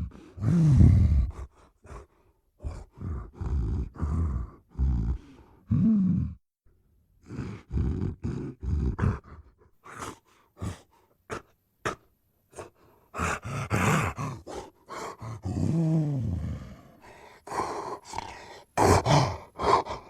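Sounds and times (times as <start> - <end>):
gorilla breathy huffs: 0.0 - 6.4, 7.2 - 20.0
gorilla grunts: 7.2 - 20.0.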